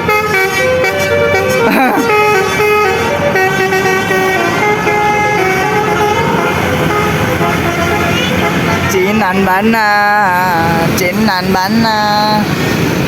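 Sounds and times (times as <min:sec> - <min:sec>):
musical air horns playing melody: 0:00.0 - 0:09.1.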